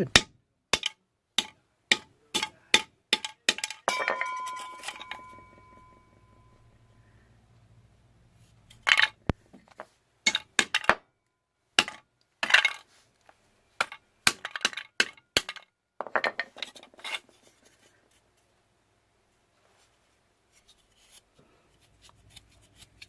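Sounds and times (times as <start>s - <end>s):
plastic and metal clinking: 3.2s - 6.1s.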